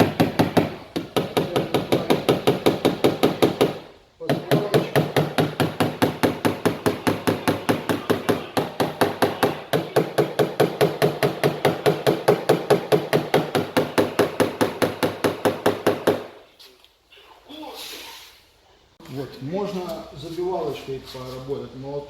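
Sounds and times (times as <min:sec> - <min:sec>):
hammer tapping sheet metal: 0:00.0 - 0:16.4.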